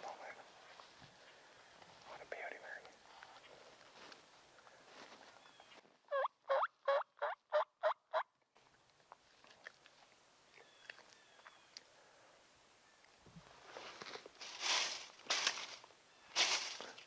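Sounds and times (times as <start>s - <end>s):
faint ticks and rustles: 0.0s - 5.9s, 8.6s - 17.0s
turkey gobbling: 6.1s - 8.3s.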